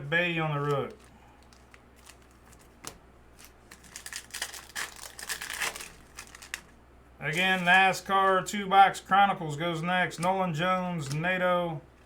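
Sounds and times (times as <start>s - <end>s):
foil wrapper crinkling: 0.5s - 8.5s.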